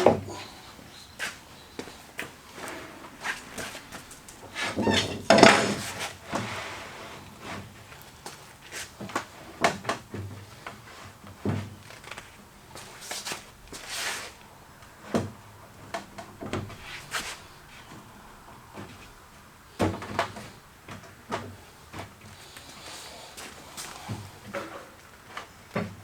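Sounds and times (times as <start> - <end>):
wood scraping: 2.6 - 7.6
wooden panels knocking: 4.8 - 5.9.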